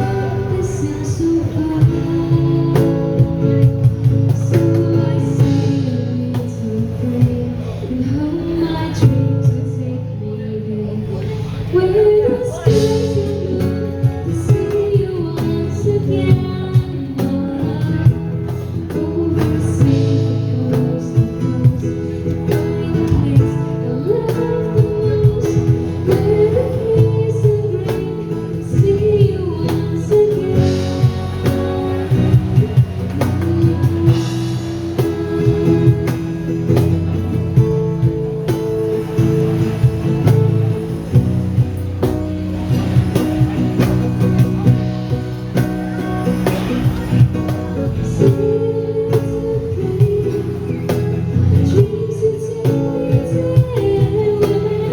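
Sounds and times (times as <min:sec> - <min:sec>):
drums steady beat: 0:00.0 - 0:10.1, 0:11.9 - 0:54.9
person singing: 0:00.0 - 0:41.0, 0:45.6 - 0:54.9
guitar: 0:00.0 - 0:54.9.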